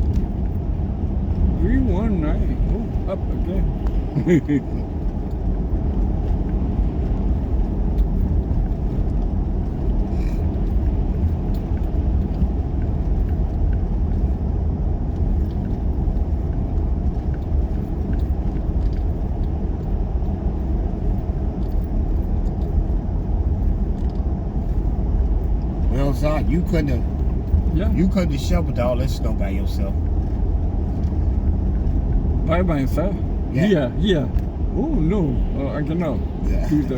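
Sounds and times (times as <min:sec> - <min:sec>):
car engine and road noise: 0:00.0 - 0:36.9.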